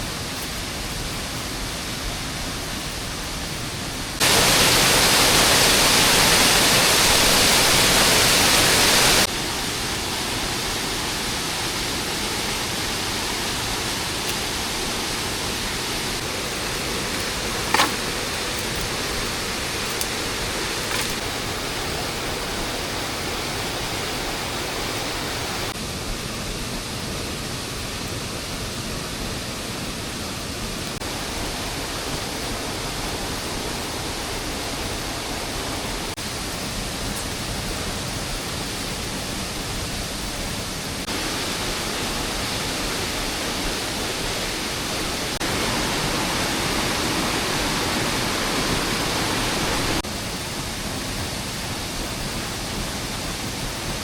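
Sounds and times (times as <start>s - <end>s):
rain hissing: 0.0s - 54.0s
sharp click: 17.7s - 18.9s.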